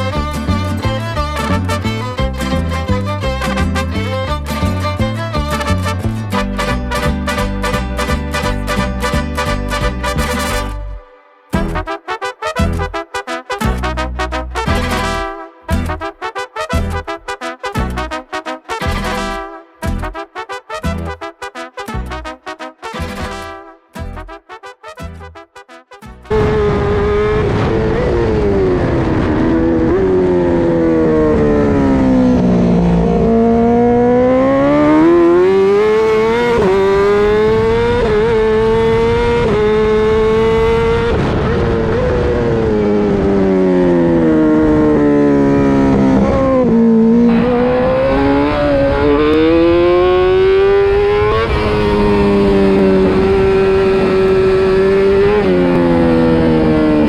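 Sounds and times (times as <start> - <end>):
wind and road noise: 0.0 - 10.8, 26.2 - 57.0
motorcycle engine revving: 26.3 - 57.0.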